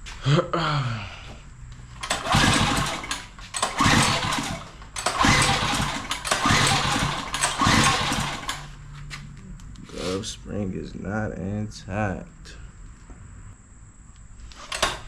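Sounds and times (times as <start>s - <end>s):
small engine pull-started and sputtering: 2.0s - 8.8s, 14.6s - 15.0s.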